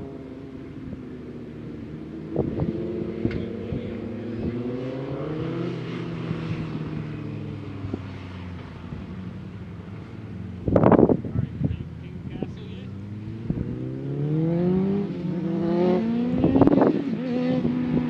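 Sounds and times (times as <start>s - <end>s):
wind buffeting microphone: 2.1s - 8.2s, 8.9s - 12.5s, 13.2s - 14.2s, 16.0s - 18.0s
vehicle engine passing by: 2.3s - 18.0s.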